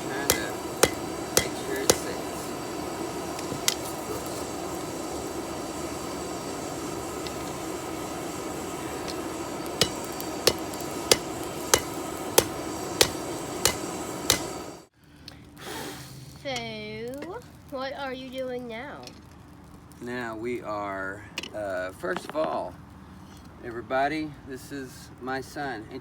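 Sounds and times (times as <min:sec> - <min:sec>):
hammer ringing on anvil: 0:00.2 - 0:02.1, 0:09.7 - 0:14.6.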